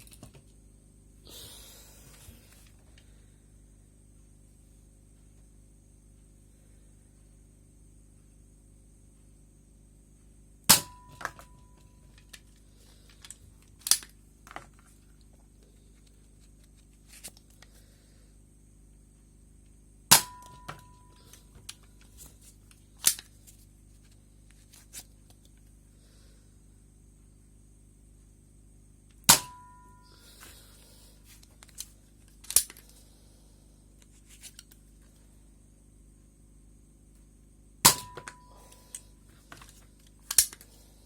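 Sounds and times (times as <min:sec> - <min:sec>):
toy blaster shot snapping: 0:13.8 - 0:14.1, 0:40.3 - 0:40.6.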